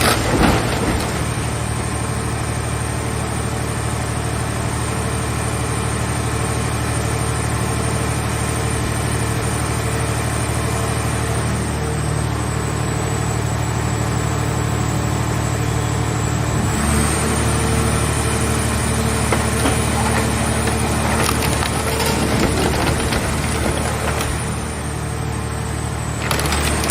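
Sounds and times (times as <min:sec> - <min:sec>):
hydraulic baler running: 0:00.0 - 0:26.9
sheet metal crackling and creaking: 0:19.2 - 0:24.7.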